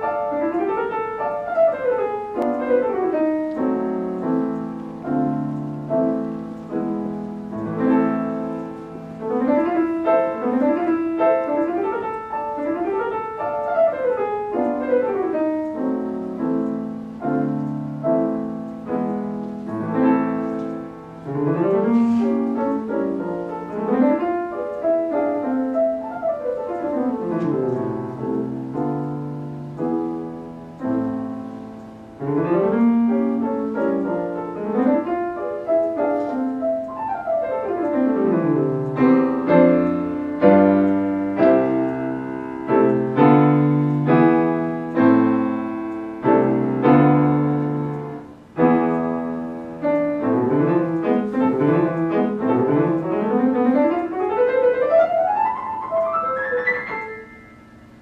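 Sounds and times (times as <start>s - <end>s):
solo piano playing fast: 0.0s - 58.0s.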